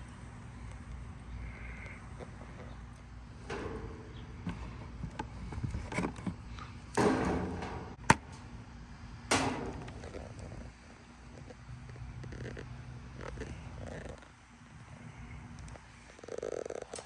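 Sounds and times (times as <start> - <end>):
knocks and rustles: 7.0 - 8.5.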